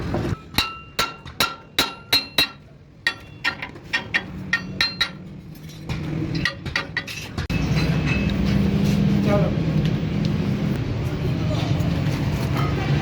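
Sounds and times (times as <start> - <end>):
hammer striking steel: 0.4 - 8.6.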